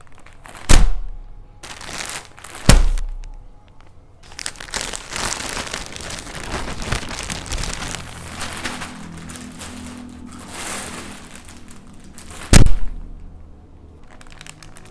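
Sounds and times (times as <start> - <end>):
packaging crinkling: 0.0 - 14.9.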